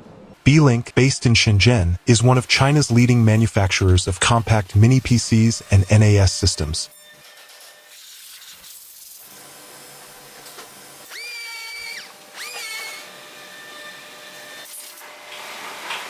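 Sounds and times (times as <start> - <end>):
factory floor hum: 0.5 - 6.9
small electric motor whine: 6.9 - 14.7.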